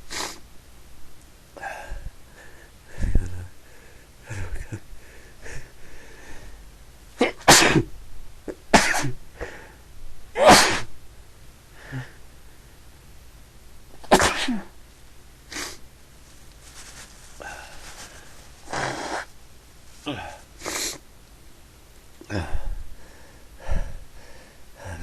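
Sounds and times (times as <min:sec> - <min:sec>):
person sneezing: 0:00.1 - 0:00.4, 0:07.2 - 0:07.9, 0:08.5 - 0:09.2, 0:10.4 - 0:10.9, 0:14.0 - 0:14.8, 0:15.5 - 0:15.8, 0:17.4 - 0:19.3, 0:20.0 - 0:21.0.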